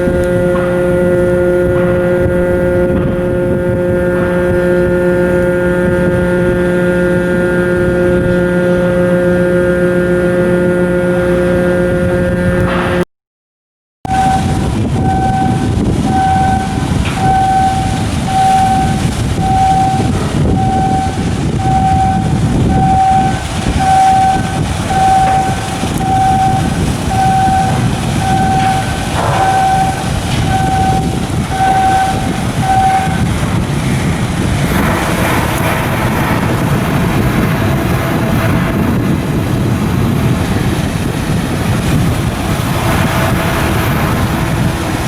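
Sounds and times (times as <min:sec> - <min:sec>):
diesel machinery rumbling: 0:00.0 - 0:13.0, 0:14.0 - 0:45.0
electronic alarm beeping: 0:14.1 - 0:33.4.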